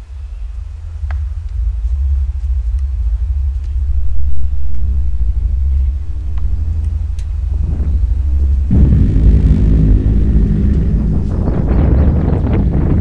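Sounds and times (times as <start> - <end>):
loud deep rumble: 0.0 - 13.0
moaning horn-like tone: 7.5 - 13.0.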